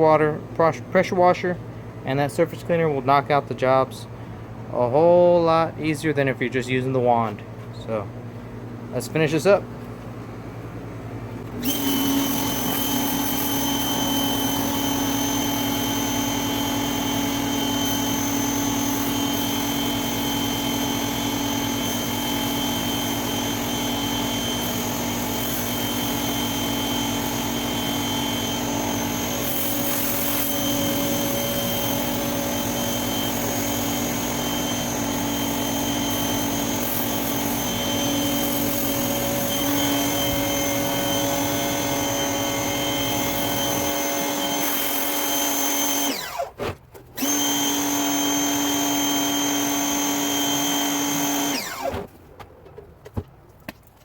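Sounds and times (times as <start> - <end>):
pressure washer motor whining: 11.4 - 46.6, 47.2 - 52.1.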